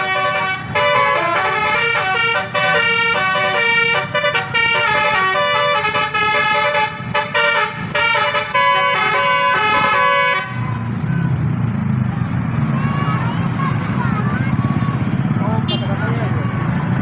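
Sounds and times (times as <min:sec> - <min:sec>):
multi-tone air horn tune: 0:00.0 - 0:10.8.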